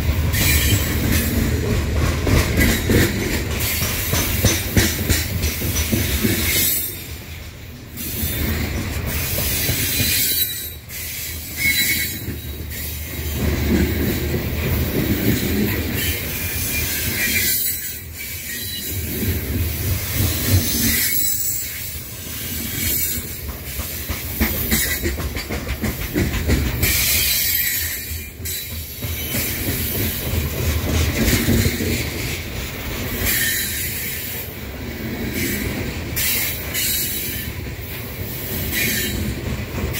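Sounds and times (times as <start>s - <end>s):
freight train cars rumbling: 0.0s - 39.9s
wheel-on-rail squeal: 0.3s - 1.4s, 8.0s - 14.2s, 15.1s - 19.3s, 20.3s - 25.2s, 26.8s - 30.3s, 33.1s - 34.5s, 38.3s - 39.4s.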